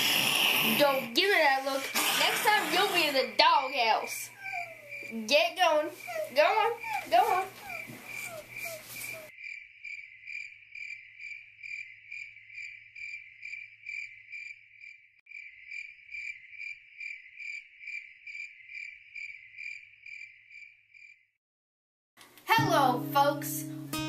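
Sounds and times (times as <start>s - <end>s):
crickets chirping: 0.3s - 21.2s.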